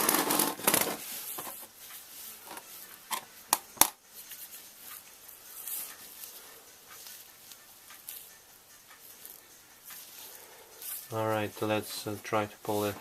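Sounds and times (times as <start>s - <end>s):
tools rustling and clinking: 0.0s - 1.8s.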